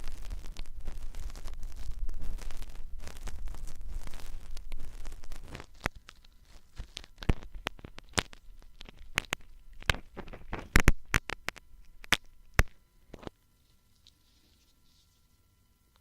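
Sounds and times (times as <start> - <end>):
ear-cleaning tools scratching: 0.0 - 11.6.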